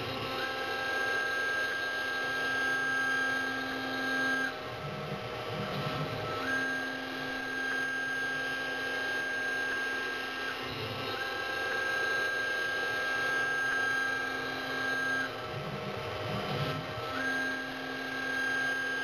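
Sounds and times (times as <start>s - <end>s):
high motor whine: 0.0s - 19.0s
milling machine cutting: 0.0s - 19.0s.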